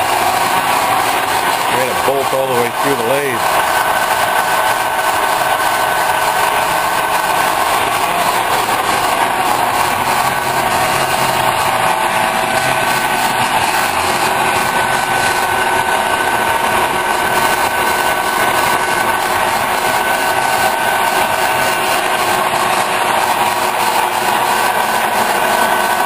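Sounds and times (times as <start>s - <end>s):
metal lathe running: 0.0s - 26.0s.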